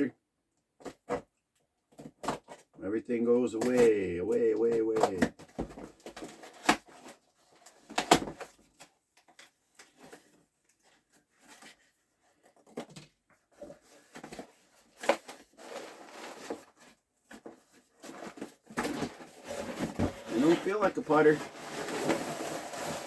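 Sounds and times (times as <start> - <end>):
packing rustling: 13.6 - 23.0.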